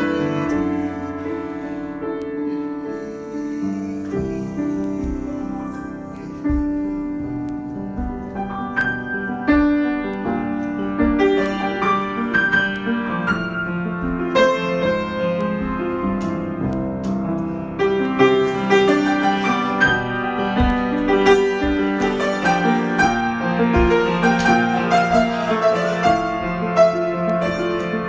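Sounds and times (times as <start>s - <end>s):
solo piano improvisation: 0.0s - 28.0s.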